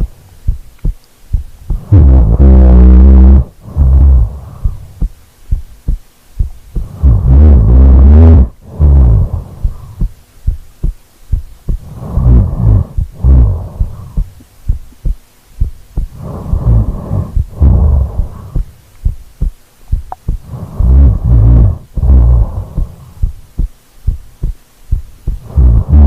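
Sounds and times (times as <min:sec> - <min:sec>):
heartbeat thuds: 0:00.0 - 0:26.0
snoring breaths: 0:01.7 - 0:05.1, 0:06.8 - 0:10.1, 0:11.7 - 0:14.3, 0:16.0 - 0:18.8, 0:20.3 - 0:23.4, 0:25.3 - 0:26.0.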